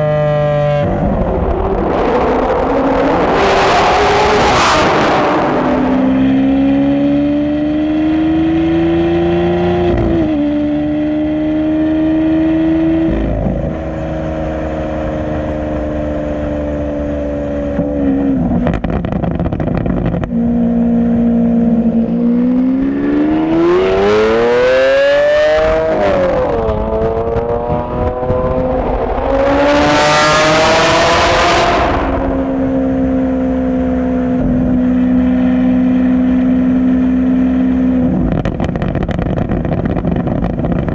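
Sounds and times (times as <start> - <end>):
car engine revving through gears: 0.3 - 18.8, 20.5 - 36.0.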